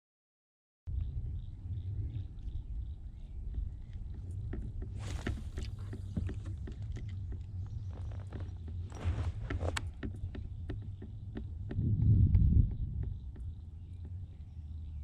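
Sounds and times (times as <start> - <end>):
steady low rumble: 0.9 - 15.0
water swishes: 4.9 - 7.4.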